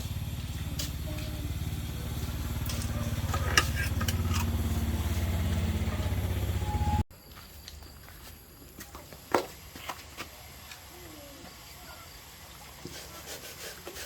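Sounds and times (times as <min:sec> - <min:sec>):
motor running with pulsing: 0:00.0 - 0:07.0.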